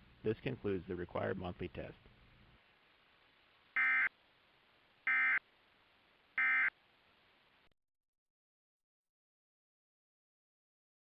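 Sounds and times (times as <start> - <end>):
digital data tone bursts: 3.8 - 4.1, 5.1 - 5.4, 6.4 - 6.7.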